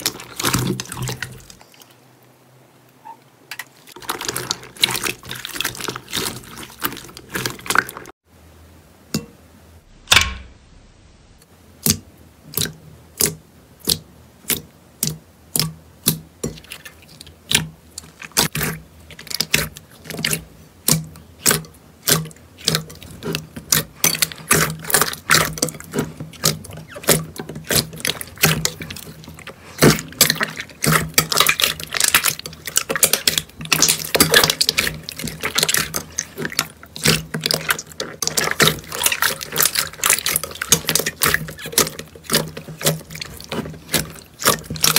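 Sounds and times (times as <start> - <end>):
slime squishing with wet clicks: 11.8 - 44.9.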